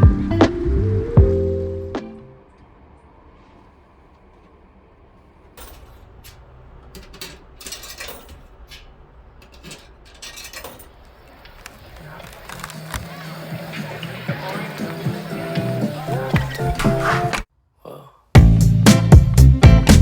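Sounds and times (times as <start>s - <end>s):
rustles and light clatters: 2.5s - 17.5s.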